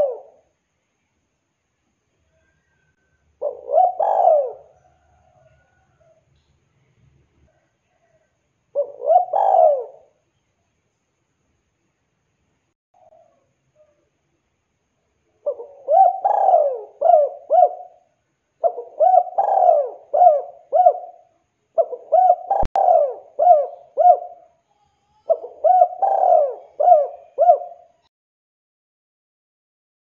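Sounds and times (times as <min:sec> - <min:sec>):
dove cooing: 0:00.0 - 0:00.4, 0:02.6 - 0:06.2, 0:07.5 - 0:10.2, 0:15.4 - 0:28.1.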